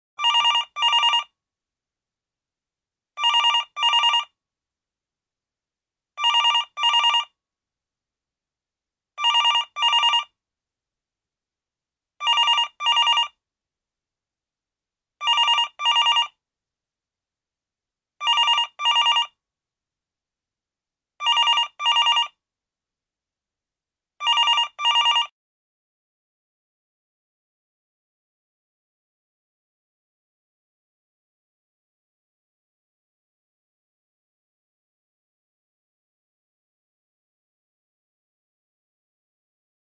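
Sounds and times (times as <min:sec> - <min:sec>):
telephone ringing: 0:00.2 - 0:01.2, 0:03.2 - 0:04.3, 0:06.2 - 0:07.3, 0:09.2 - 0:10.3, 0:12.2 - 0:13.3, 0:15.2 - 0:16.3, 0:18.2 - 0:19.3, 0:21.2 - 0:22.3, 0:24.2 - 0:25.3.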